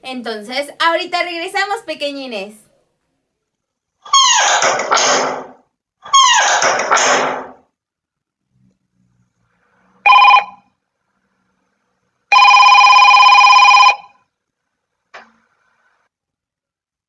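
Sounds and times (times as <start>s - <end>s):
telephone bell ringing: 10.0s - 10.7s, 12.3s - 14.3s.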